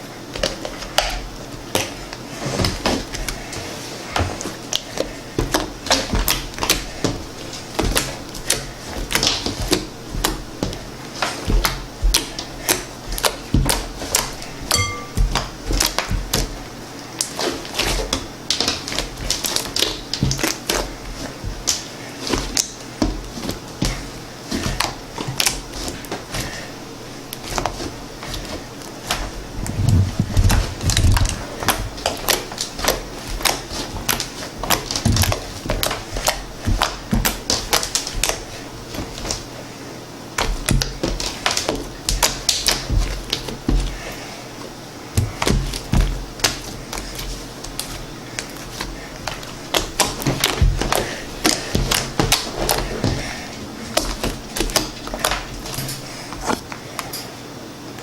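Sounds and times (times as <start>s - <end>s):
slime squishing: 0.3s - 57.2s.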